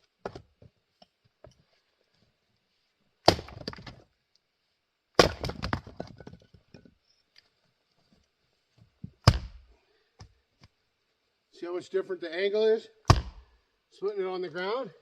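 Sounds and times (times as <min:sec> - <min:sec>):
axe striking wood: 0:03.2 - 0:04.0, 0:05.2 - 0:06.1, 0:09.2 - 0:09.6, 0:13.1 - 0:13.5
wood crackling and clattering: 0:05.3 - 0:07.0.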